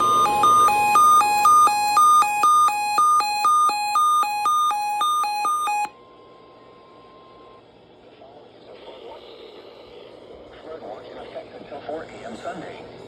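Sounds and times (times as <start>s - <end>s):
weather radio alert alarm beeping: 0.0s - 6.0s
steady warning alarm tone: 0.0s - 7.6s.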